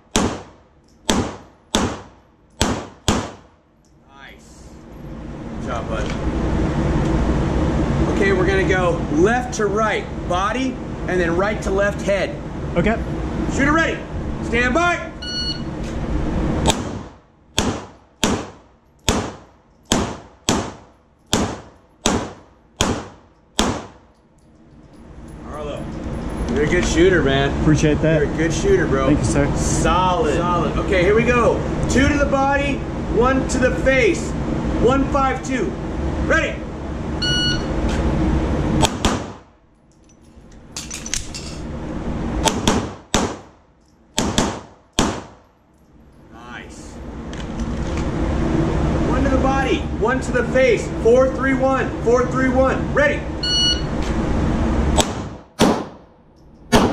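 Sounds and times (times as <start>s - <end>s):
pistol shots with echo: 0.1s - 3.4s, 16.6s - 24.0s, 55.0s - 56.0s.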